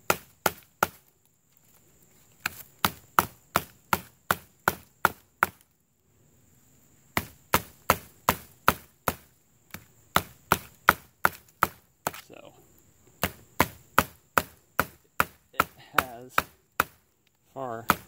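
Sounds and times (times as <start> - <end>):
knife chopping wooden stick: 13.2 - 17.0.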